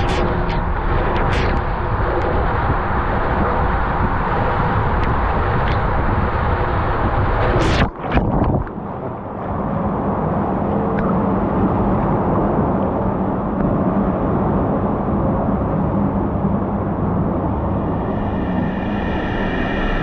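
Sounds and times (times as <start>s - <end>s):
high hiss: 17.8s - 20.0s.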